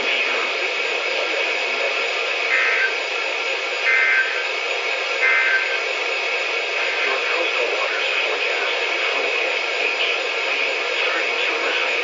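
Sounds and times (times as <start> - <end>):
radio reception hiss: 0.0 - 12.0
warbling data tones: 2.4 - 3.1, 3.8 - 4.6, 5.2 - 6.0.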